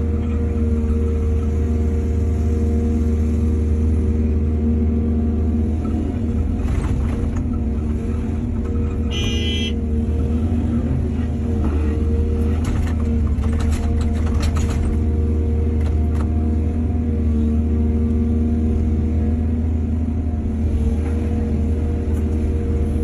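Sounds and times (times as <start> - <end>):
diesel machinery rumbling: 0.0 - 23.0.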